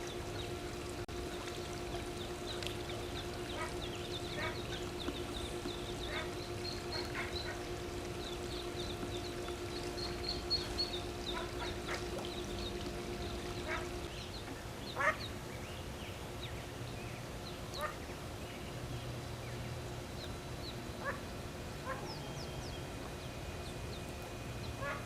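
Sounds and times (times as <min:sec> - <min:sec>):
ducklings peeping: 0:00.0 - 0:15.4
duck quacking: 0:03.1 - 0:05.1, 0:05.9 - 0:07.6, 0:10.0 - 0:12.2, 0:13.6 - 0:14.0.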